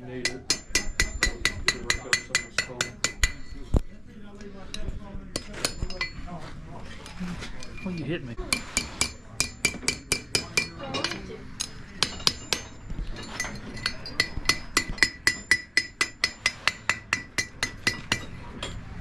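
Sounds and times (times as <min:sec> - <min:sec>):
hammer striking iron on anvil: 0:00.2 - 0:03.6, 0:05.3 - 0:06.2, 0:08.5 - 0:18.8.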